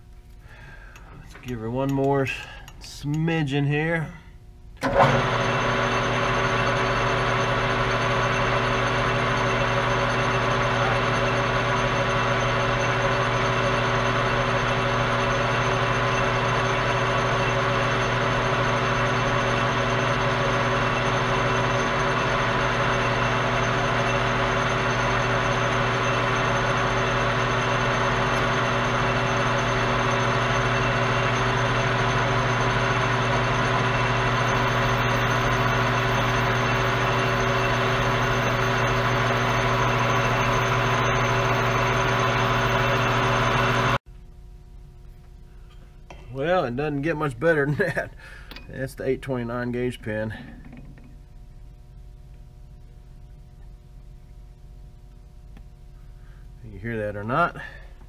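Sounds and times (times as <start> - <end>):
metal lathe running: 4.8 - 44.0.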